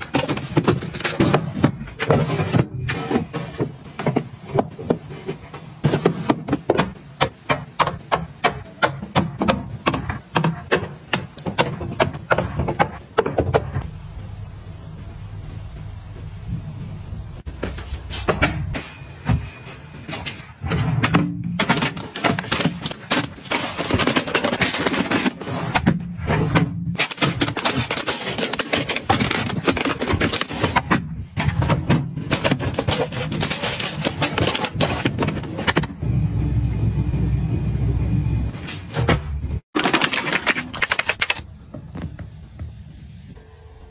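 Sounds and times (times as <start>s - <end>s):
low steady hum: 13.8s - 17.9s.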